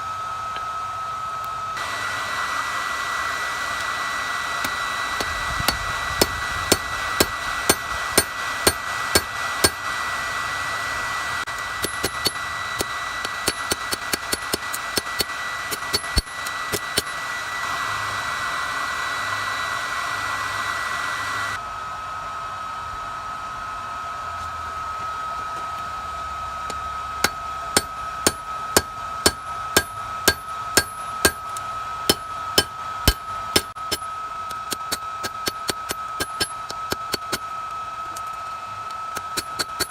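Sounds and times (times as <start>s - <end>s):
forge blower whine and hiss: 0.0s - 39.9s
hammer striking steel on anvil: 6.2s - 9.8s, 11.8s - 17.2s, 27.2s - 37.4s, 39.2s - 39.9s.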